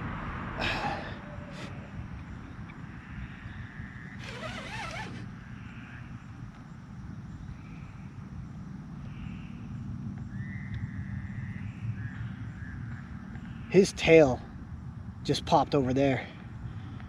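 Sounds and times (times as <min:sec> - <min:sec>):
fishing reel drag buzzing: 0:04.2 - 0:05.3.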